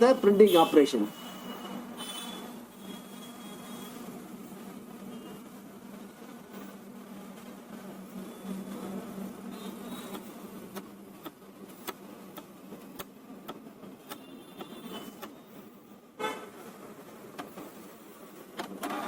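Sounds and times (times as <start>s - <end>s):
printer motor buzz: 9.3s - 10.8s, 14.0s - 15.5s.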